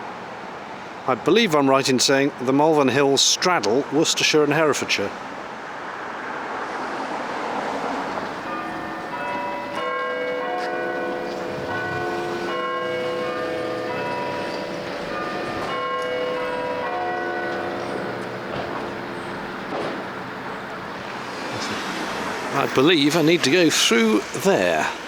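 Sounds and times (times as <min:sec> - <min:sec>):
faint traffic noise: 0:00.0 - 0:25.0
church bells ringing a peal: 0:08.3 - 0:25.0.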